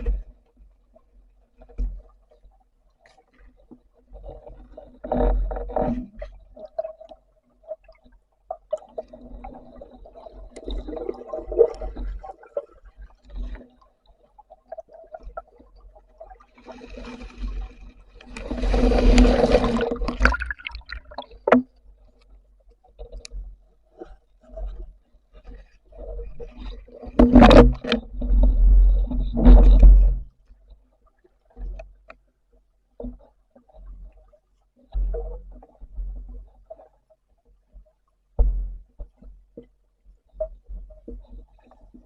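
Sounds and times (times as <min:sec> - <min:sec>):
water gurgling and sloshing: 0:00.0 - 0:42.0
rushing burst of water: 0:18.4 - 0:21.2.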